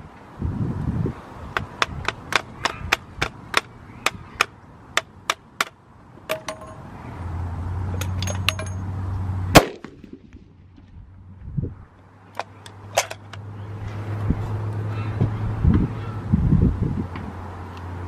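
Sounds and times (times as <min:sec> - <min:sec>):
rifle shot: 0:09.5 - 0:10.5.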